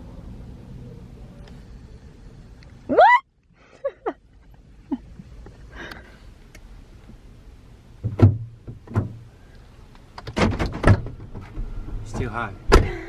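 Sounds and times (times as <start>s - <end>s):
faint low rumble: 0.0s - 8.6s.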